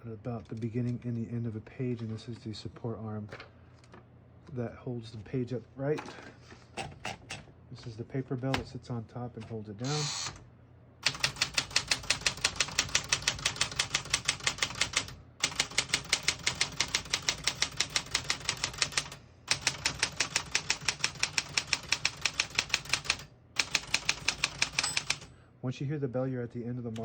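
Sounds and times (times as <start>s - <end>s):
typewriter keys striking: 11.0s - 25.3s.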